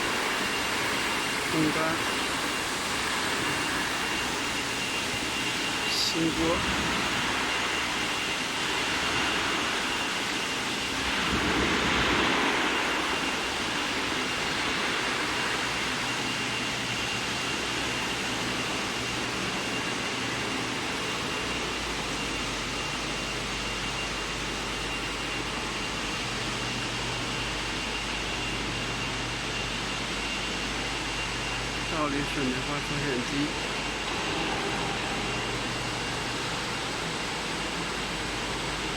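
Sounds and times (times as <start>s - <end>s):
faint high whine: 0.0s - 38.9s
machinery hiss and hum: 0.0s - 38.9s.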